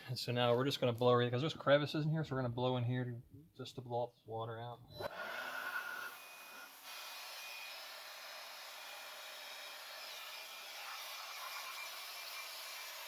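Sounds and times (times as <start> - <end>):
battery-powered blower running: 5.0 - 13.0.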